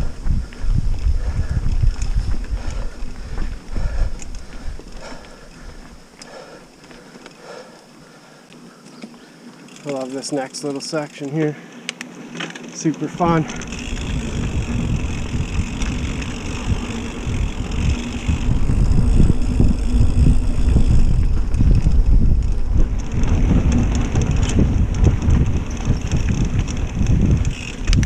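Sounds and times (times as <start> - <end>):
wind buffeting microphone: 0.0 - 6.8, 13.1 - 28.0
bike tyres rumbling over bumps: 0.0 - 28.0.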